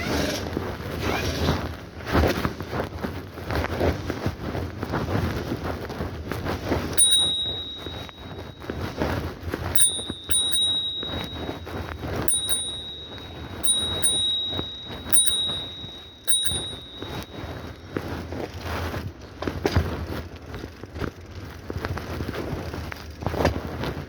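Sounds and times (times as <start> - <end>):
low rumble of wind and rolling: 1.7 - 24.0
bicycle bell ringing: 6.9 - 18.6.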